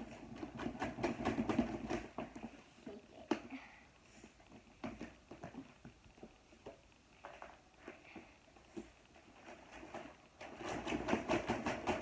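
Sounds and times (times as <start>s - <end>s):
plastic toys tapping and clicking: 0.1s - 2.6s, 9.7s - 12.0s.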